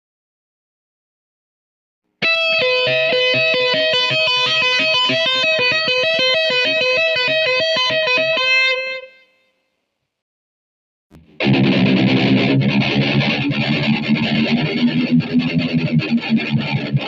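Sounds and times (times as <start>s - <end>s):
electric guitar alternating two notes: 2.2s - 9.2s, 11.2s - 17.0s.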